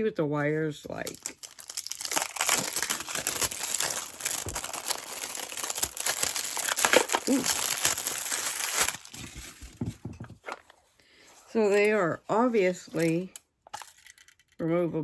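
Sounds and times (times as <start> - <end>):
packaging crinkling: 1.0 - 10.6.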